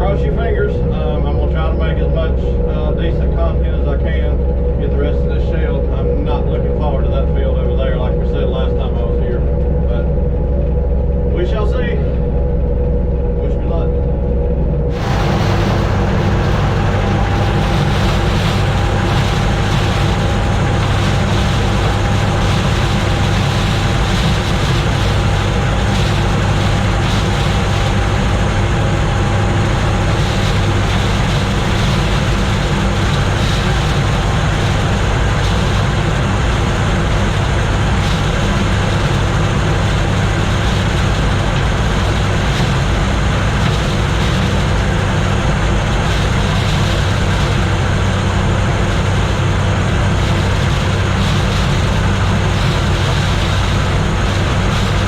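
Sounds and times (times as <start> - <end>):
combine harvester hum: 0.0 - 55.0.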